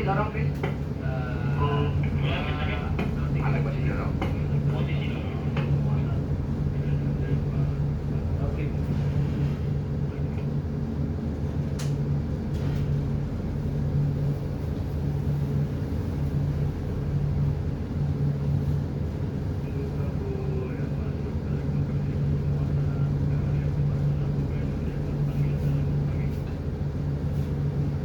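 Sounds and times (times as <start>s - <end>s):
boat engine droning: 0.0s - 11.6s.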